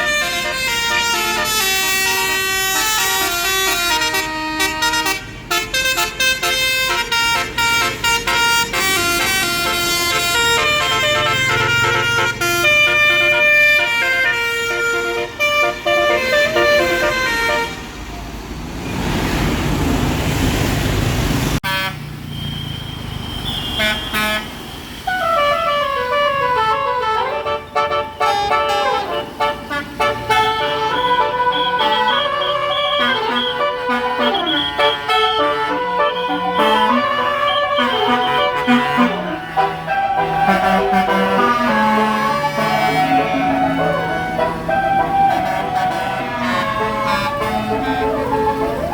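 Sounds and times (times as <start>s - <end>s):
multi-tone bus air horns: 0.0s - 18.2s, 21.6s - 48.9s.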